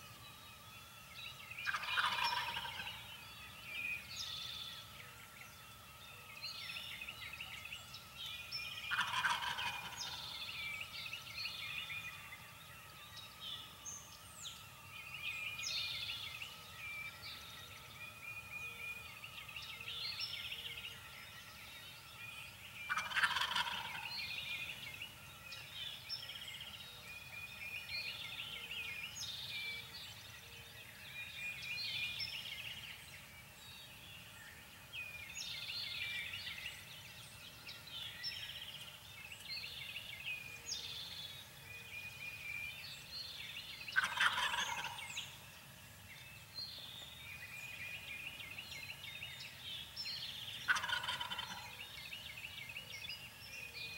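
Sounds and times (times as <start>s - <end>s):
songbirds trilling: 0.0s - 53.9s
turkey gobbling: 1.6s - 3.1s, 8.9s - 10.2s, 22.9s - 24.1s, 44.0s - 45.0s, 50.7s - 51.7s.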